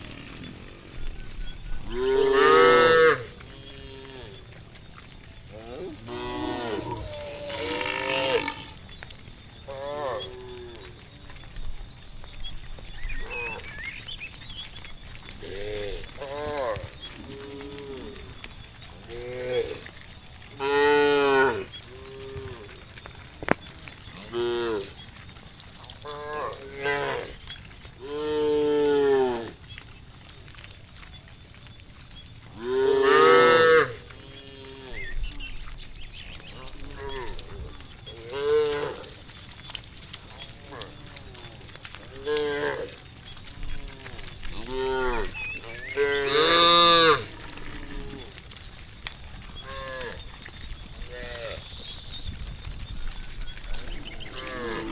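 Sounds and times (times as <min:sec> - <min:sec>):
cattle mooing: 0:01.9 - 0:04.4, 0:05.6 - 0:08.8, 0:44.0 - 0:48.4, 0:51.1 - 0:51.6
high-pitched hiss: 0:51.1 - 0:52.5.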